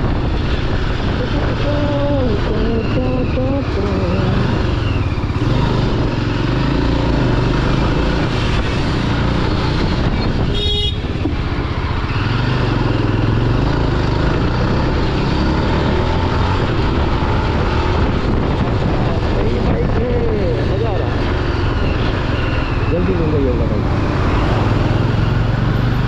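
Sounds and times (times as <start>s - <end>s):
road noise: 0.0s - 26.0s
horn toot: 10.5s - 11.1s.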